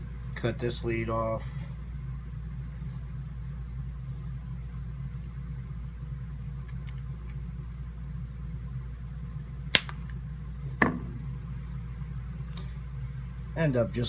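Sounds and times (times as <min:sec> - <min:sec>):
steady low hum: 0:00.0 - 0:14.0
wire cutters snipping: 0:09.8 - 0:10.1.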